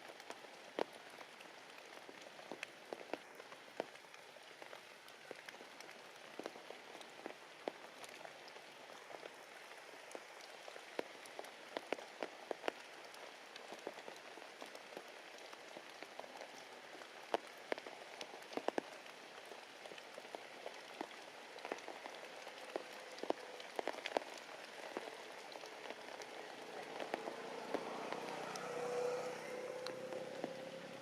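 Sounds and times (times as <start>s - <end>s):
heavy rain: 0.0s - 31.0s.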